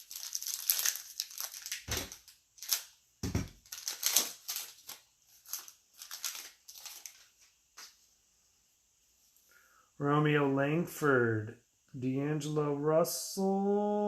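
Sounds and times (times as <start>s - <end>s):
foil pack crinkling: 0.0s - 7.5s.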